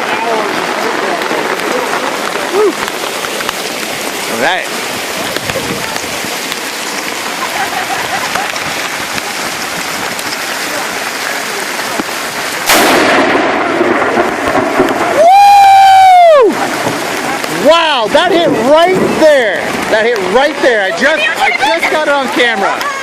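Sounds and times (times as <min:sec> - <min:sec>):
rain and hail pattering: 0:00.0 - 0:23.0
person yelling: 0:02.5 - 0:02.8, 0:15.2 - 0:16.6
loud thunderclap with rumble: 0:12.0 - 0:20.6.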